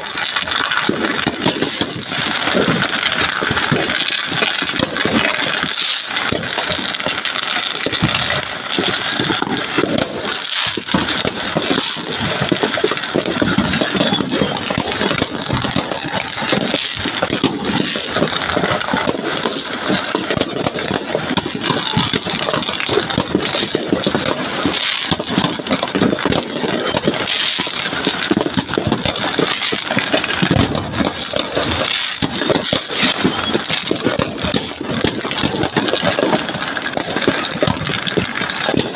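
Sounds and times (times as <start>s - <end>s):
fireworks crackling and banging: 0.0s - 38.9s.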